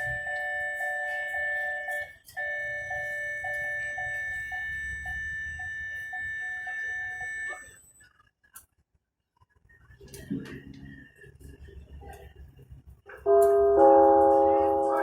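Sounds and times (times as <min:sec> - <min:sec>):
pulsing beep: 0:00.0 - 0:07.9
steady high warning tones: 0:00.0 - 0:08.1, 0:13.2 - 0:15.0.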